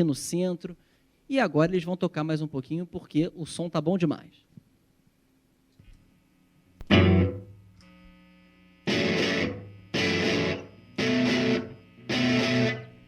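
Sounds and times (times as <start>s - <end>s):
distorted electric guitar chords: 6.8s - 13.0s.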